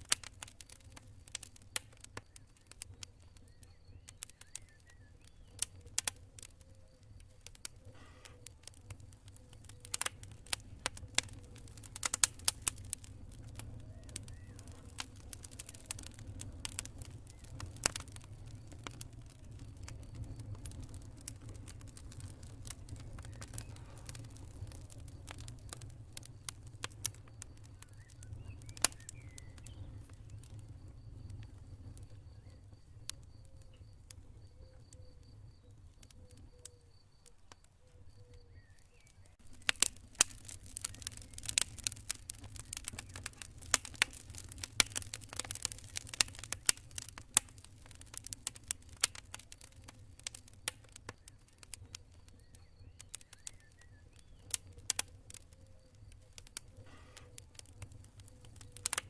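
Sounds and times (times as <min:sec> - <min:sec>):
campfire crackling and popping: 0:00.0 - 0:59.0
cricket chirping: 0:24.6 - 0:59.0.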